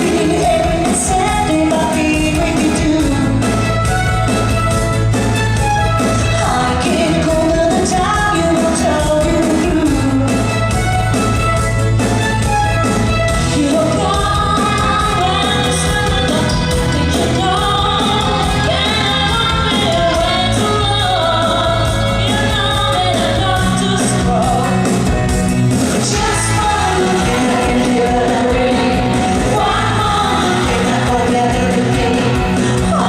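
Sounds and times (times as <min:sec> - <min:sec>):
women singing: 0:00.0 - 0:03.4, 0:06.2 - 0:10.2, 0:13.5 - 0:24.8, 0:26.0 - 0:33.0
instrumental accompaniment: 0:00.0 - 0:33.0
pulsing bass line: 0:00.0 - 0:33.0.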